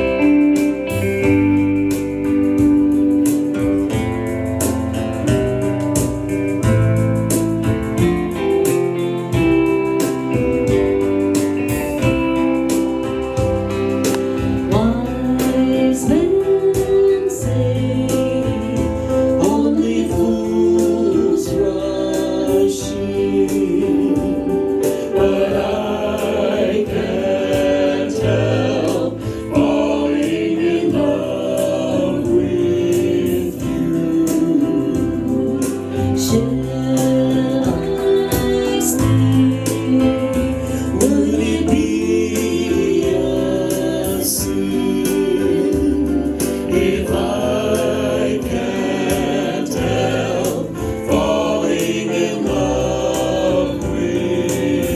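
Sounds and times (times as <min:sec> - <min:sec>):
band playing: 0:00.0 - 0:54.9
voices singing together: 0:11.5 - 0:54.9.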